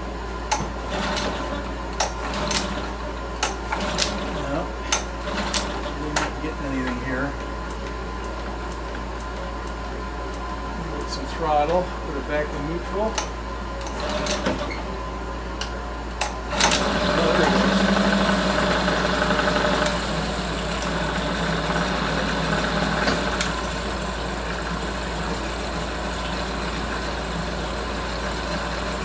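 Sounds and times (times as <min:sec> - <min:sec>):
outboard motor starting and idling: 0:16.3 - 0:29.0.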